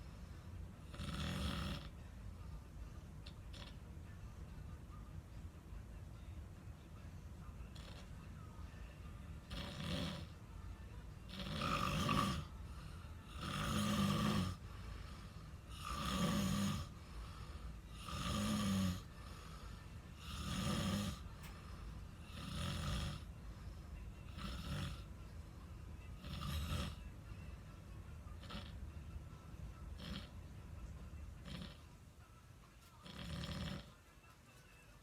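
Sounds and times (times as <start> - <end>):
person snoring: 0.3 - 2.1, 3.2 - 3.8, 7.7 - 8.1, 9.5 - 10.4, 11.3 - 25.5, 26.1 - 27.1, 28.3 - 28.8, 29.9 - 30.5, 31.4 - 31.9, 33.0 - 34.0.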